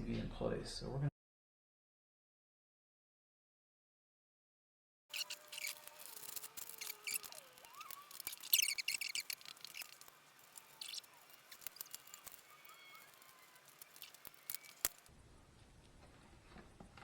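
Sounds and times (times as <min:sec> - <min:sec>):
small plastic clicks: 0:05.2 - 0:15.1.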